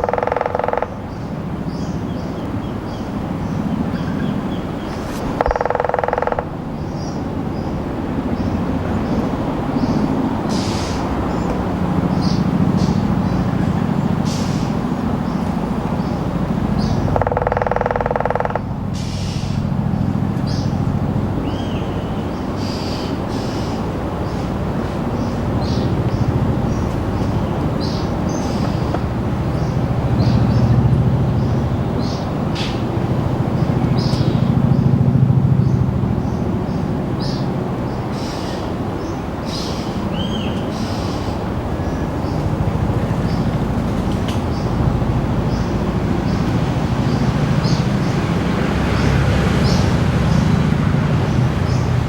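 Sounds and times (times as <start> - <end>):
high-pitched bird calls: 0.0 - 7.8
woodpecker drumming on tree: 0.0 - 21.9
helicopter droning overhead: 0.0 - 52.0.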